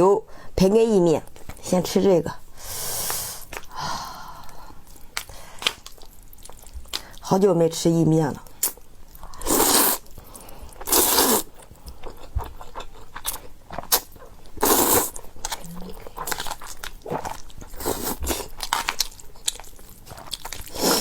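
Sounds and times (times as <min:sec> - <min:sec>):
person chewing pasta: 0:04.5 - 0:07.2, 0:08.6 - 0:21.0.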